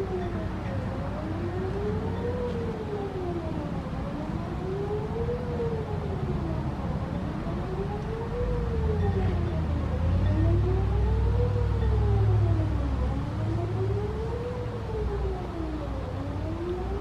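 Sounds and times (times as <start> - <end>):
distant warning siren wailing: 0.0 - 17.0.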